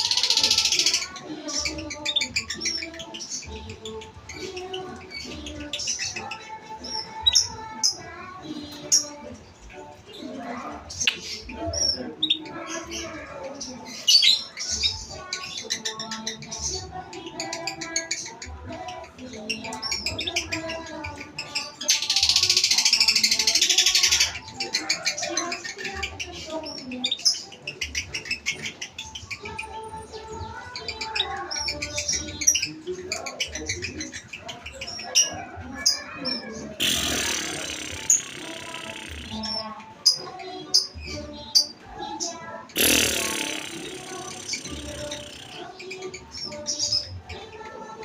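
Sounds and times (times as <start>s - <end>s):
bird chattering chirps: 0.0s - 9.2s, 10.8s - 29.9s, 33.4s - 48.0s
lovebird chattering and squawking: 33.4s - 41.0s, 42.4s - 47.3s
lower bird calls: 36.8s - 39.7s, 42.8s - 45.6s.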